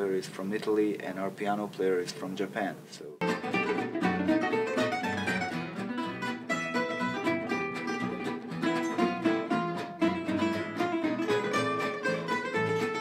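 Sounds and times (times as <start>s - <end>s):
plucked lute runs: 3.2s - 13.0s.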